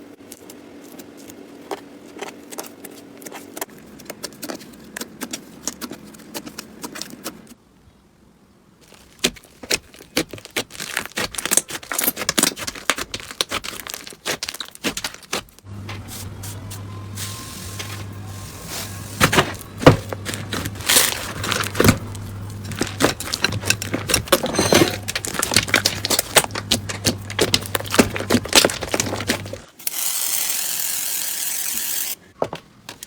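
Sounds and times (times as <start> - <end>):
slime crackling and popping: 8.8 - 15.5, 25.1 - 29.6.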